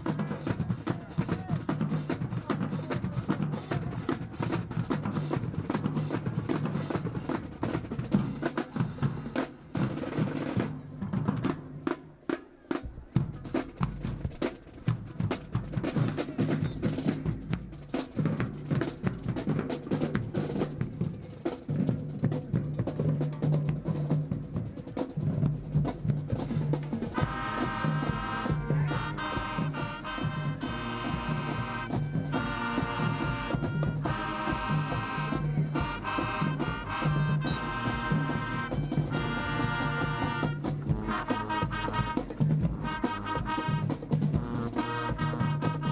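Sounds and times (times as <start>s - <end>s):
marching band percussion: 0.0s - 45.9s
horn section phrases: 27.1s - 45.9s.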